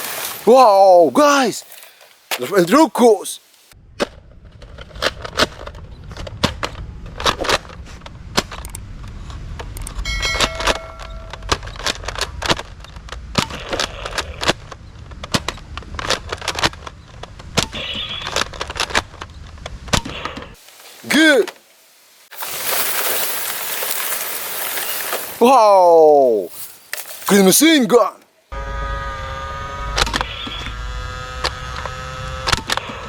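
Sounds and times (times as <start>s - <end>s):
short pitched tone: 10.0s - 11.4s.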